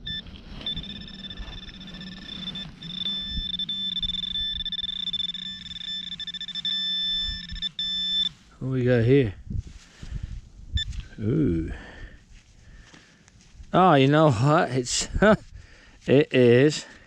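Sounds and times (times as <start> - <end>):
metal detector high-pitched tone: 0.0 - 9.2
low hum: 0.0 - 13.7.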